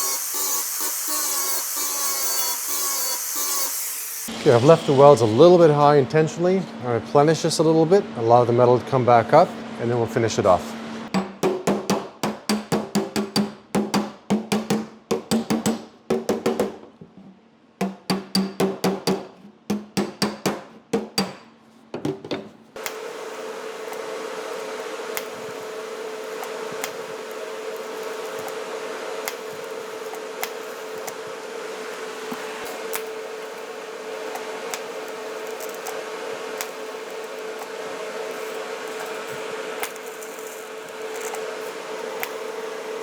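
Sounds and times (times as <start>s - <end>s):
hammer striking sheet metal: 11.1s - 16.7s, 17.8s - 21.5s
steady machine hum: 22.8s - 43.0s.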